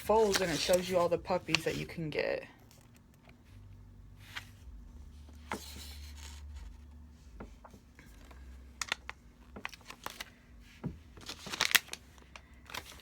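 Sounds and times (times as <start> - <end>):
paper and wrapper rustling: 0.0 - 2.0, 7.6 - 13.0
wrapper crinkle: 0.0 - 2.0, 8.1 - 10.4, 11.2 - 13.0.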